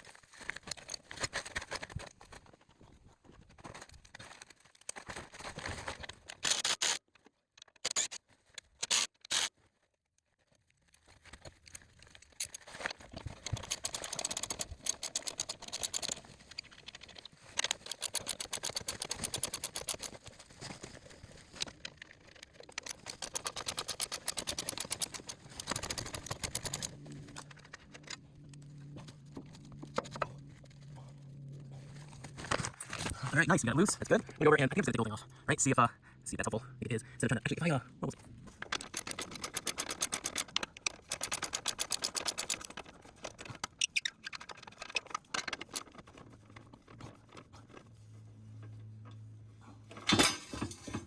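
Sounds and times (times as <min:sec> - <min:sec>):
ratchet wrench clicking: 0:06.4 - 0:07.0
steady low hum: 0:24.9 - 0:38.7.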